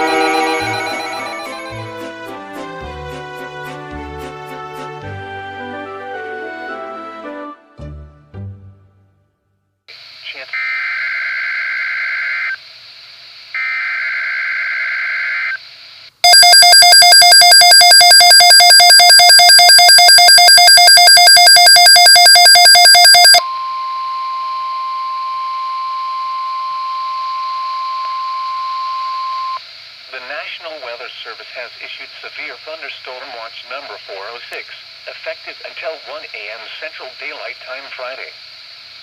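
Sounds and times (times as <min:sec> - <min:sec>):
rapidly pulsing buzzer alarm: 0:00.0 - 0:02.0, 0:16.2 - 0:23.4
steady warning alarm tone: 0:00.0 - 0:02.1, 0:16.2 - 0:29.6
screeching digital header bursts: 0:16.3 - 0:23.4.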